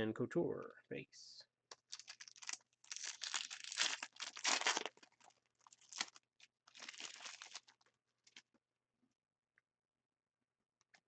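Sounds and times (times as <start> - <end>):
card wrappers crinkling and tearing: 1.8 - 8.4.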